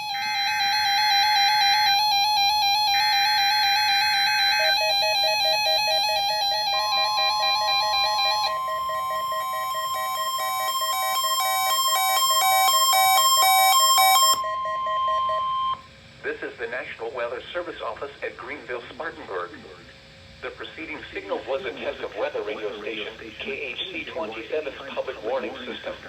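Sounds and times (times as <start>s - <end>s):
steady warning alarm tone: 0.0s - 15.9s
repeating electronic beeping: 1.2s - 15.8s
buzzy data screech: 2.7s - 15.8s.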